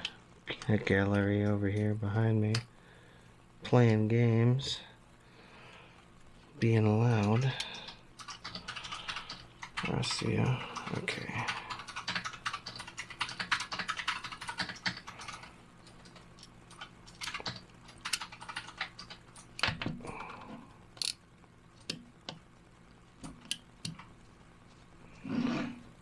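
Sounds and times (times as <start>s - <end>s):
computer keyboard typing: 7.1s - 20.4s.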